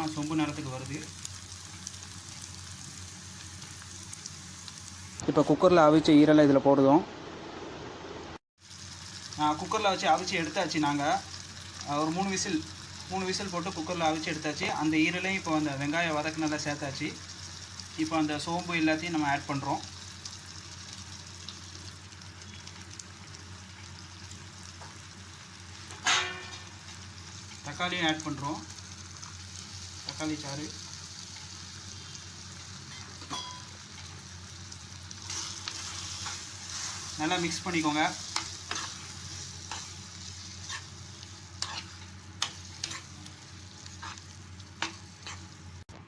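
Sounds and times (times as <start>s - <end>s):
liver and onions sizzling in oil: 0.0s - 5.2s, 8.6s - 45.9s
spoon scraping a pan: 32.9s - 34.1s, 35.2s - 37.2s, 38.2s - 41.0s, 41.6s - 43.2s, 43.8s - 45.6s.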